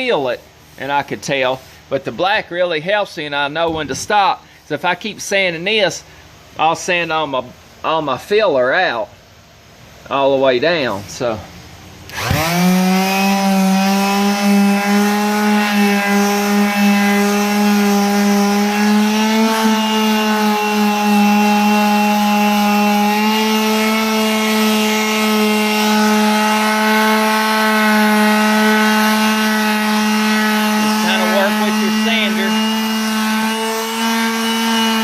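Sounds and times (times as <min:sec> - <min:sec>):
power sander humming: 0:12.0 - 0:35.0.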